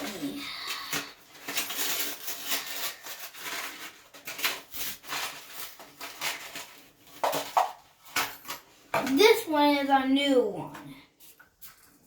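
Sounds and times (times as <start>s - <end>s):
plastic parts rustling and clicking: 0.0s - 9.3s.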